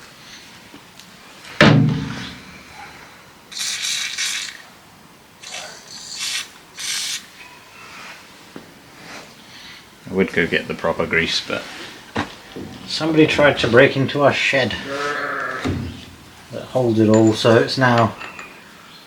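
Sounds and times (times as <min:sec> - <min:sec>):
ringing metal clank: 0:01.6 - 0:02.5, 0:17.0 - 0:18.6.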